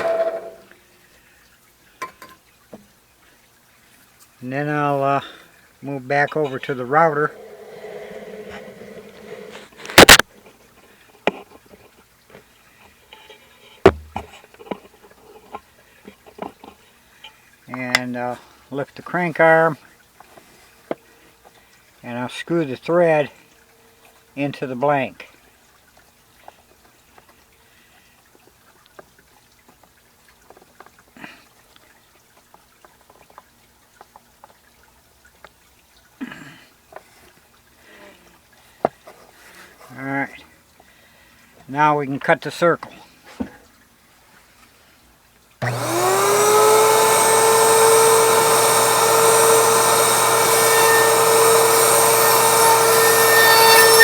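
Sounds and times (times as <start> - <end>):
rustle: 0.0 - 5.9, 7.3 - 18.7, 25.2 - 45.6
dull thud: 13.9 - 14.3
parts knocking and clicking: 13.9 - 14.9.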